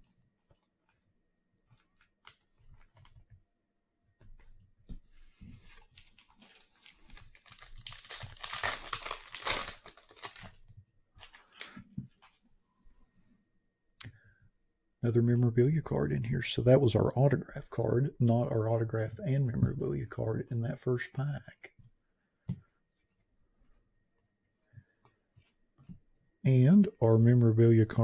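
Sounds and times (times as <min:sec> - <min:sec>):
cards clicking and rustling: 0:05.7 - 0:10.6
wrapper crinkling: 0:05.7 - 0:10.6
foil pack tearing: 0:06.2 - 0:10.5.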